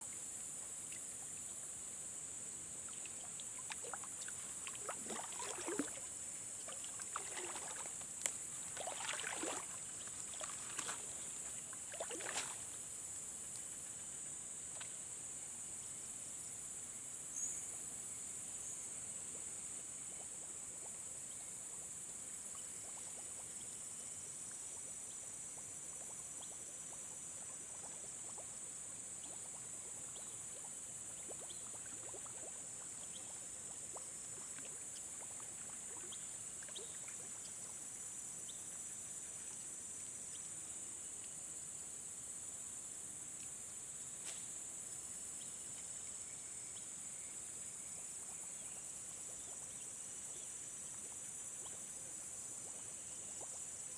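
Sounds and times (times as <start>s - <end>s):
water splashing and sloshing: 3.0s - 12.8s.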